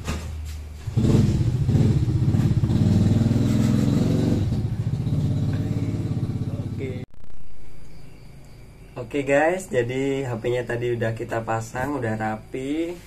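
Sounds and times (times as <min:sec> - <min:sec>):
engine running: 0:00.8 - 0:07.1.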